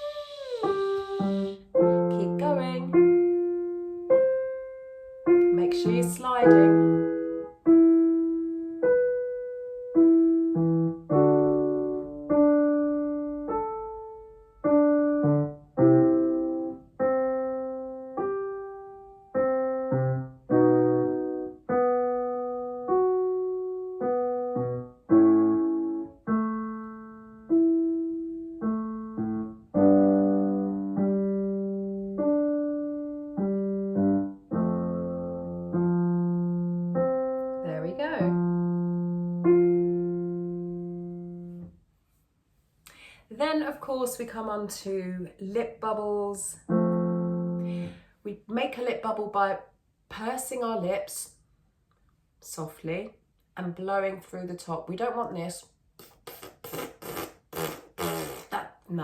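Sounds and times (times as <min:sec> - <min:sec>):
piano notes and chords: 0:00.0 - 0:41.8, 0:46.6 - 0:48.1.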